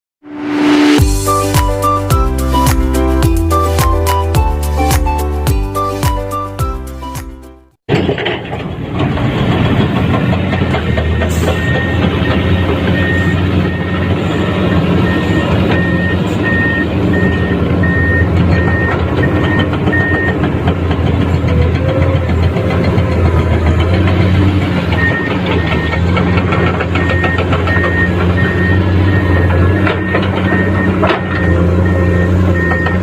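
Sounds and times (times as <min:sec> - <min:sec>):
heavy diesel engine running: 0:07.9 - 0:33.0
backup alarm beeping: 0:10.9 - 0:20.4, 0:27.0 - 0:33.0.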